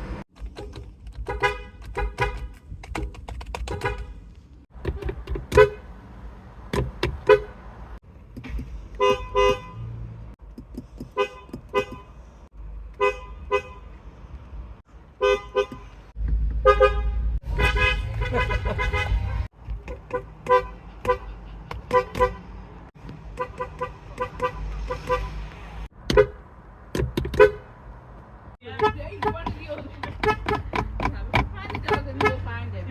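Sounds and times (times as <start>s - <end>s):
car horn toots: 1.2s - 2.6s, 9.0s - 10.0s, 11.1s - 12.1s, 15.2s - 15.9s, 16.6s - 21.3s, 21.9s - 22.5s, 23.3s - 25.4s, 27.3s - 27.7s, 30.0s - 30.8s.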